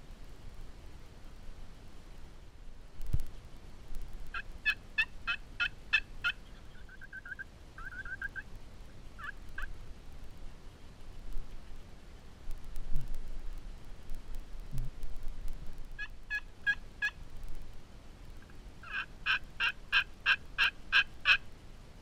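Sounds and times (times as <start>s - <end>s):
turkey yelping: 4.3s - 8.5s, 9.2s - 9.7s, 16.0s - 17.2s, 18.8s - 21.4s.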